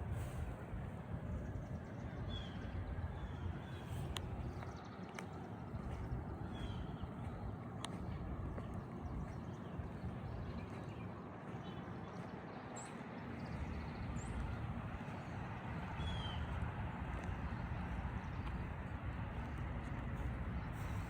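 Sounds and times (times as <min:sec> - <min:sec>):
low outdoor rumble: 0:00.0 - 0:21.0.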